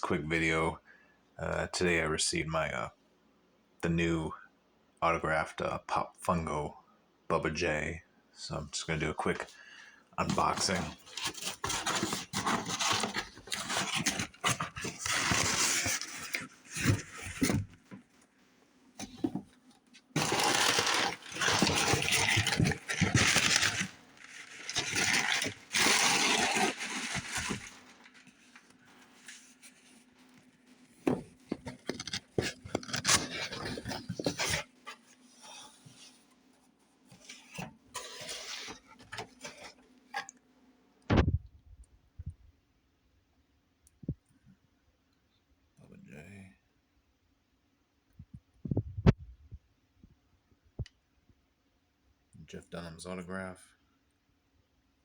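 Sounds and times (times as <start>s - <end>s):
packaging scraping and rustling: 10.2s - 18.1s, 19.0s - 36.3s, 37.1s - 40.3s.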